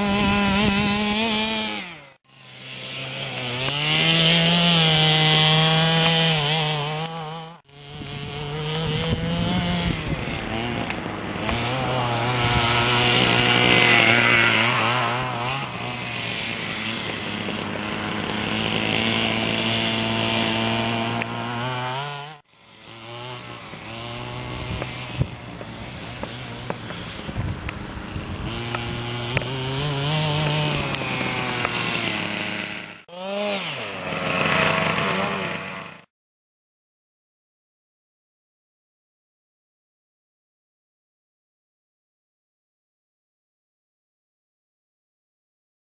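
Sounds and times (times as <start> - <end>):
small two-stroke engine revving: 0.0 - 36.1.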